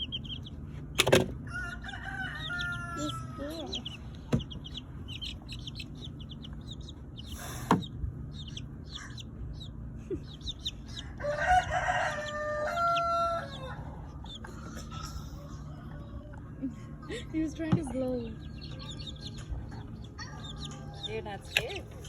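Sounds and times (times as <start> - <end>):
chicks peeping: 0.0 - 22.0
chicken crowing: 1.4 - 3.9, 10.9 - 14.4.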